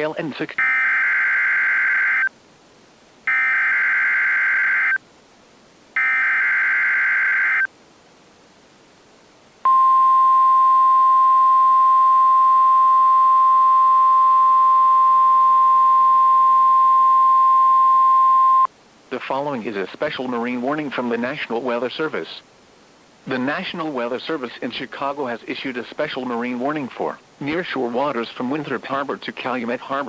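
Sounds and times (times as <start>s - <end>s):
steady single-pitch alert tone: 9.7s - 18.7s.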